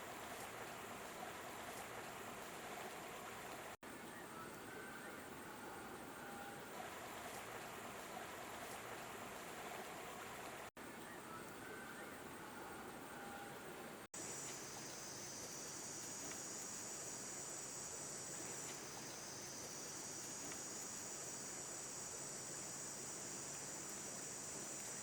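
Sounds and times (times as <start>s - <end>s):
insects buzzing: 14.2s - 25.0s.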